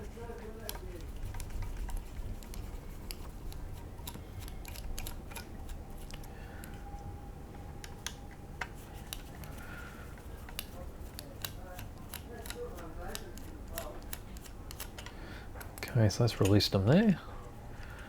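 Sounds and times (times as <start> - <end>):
hand tools clicking on plastic: 0.0 - 6.9, 7.8 - 16.6.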